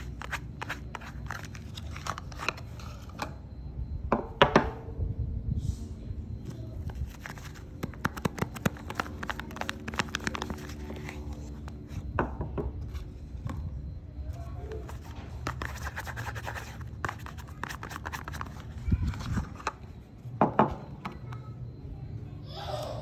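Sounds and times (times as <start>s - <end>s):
low steady hum: 0.0s - 23.0s
scratchy rustling: 14.8s - 19.6s.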